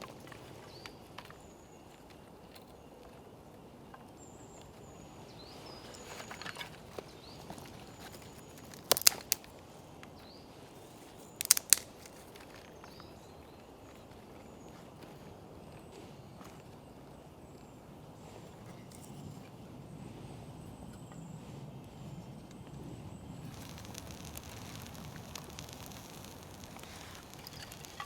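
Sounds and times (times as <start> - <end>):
sharp snaps or knocks: 8.6 - 9.5, 11.4 - 12.2, 23.5 - 28.0
faint bird chirps: 23.4 - 28.0
rustle: 23.4 - 28.0.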